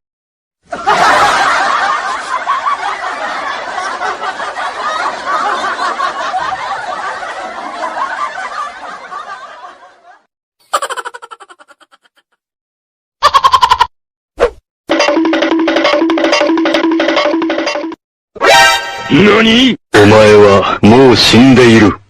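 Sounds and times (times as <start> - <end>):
group of people chuckling: 0.7 - 12.4.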